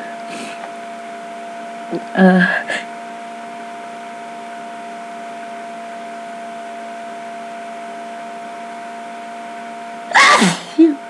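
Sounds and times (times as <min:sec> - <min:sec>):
background hum and hiss: 0:00.0 - 0:11.0.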